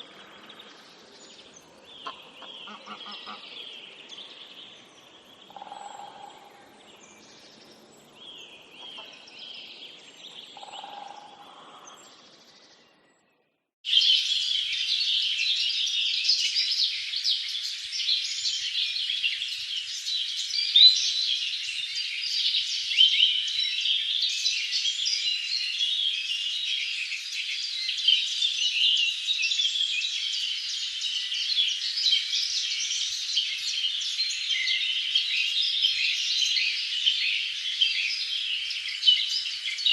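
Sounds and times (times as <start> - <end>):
faint bird calls: 0.0 - 12.4
chorus of small birds chirping: 0.0 - 39.9.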